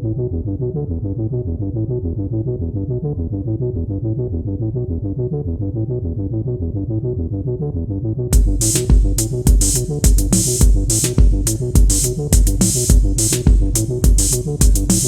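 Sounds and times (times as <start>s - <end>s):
synthesizer repeating pattern: 8.4s - 15.0s.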